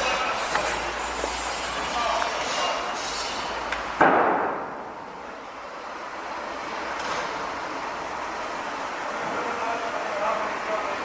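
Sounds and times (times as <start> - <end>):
construction site noise: 0.0 - 11.0
loud bang: 4.0 - 4.8.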